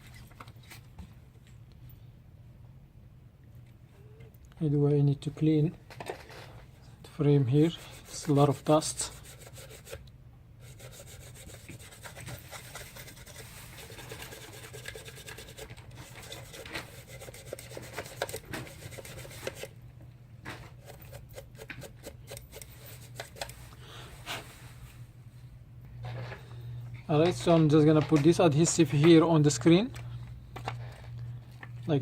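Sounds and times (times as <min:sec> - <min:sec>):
low steady hum: 0:00.0 - 0:32.0
scratching on phone frame: 0:07.4 - 0:10.0, 0:10.6 - 0:19.8, 0:20.4 - 0:24.5.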